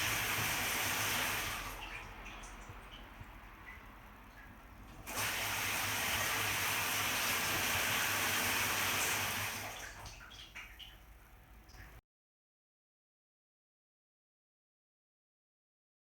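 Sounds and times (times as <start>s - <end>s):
shower water spraying: 0.0s - 10.8s.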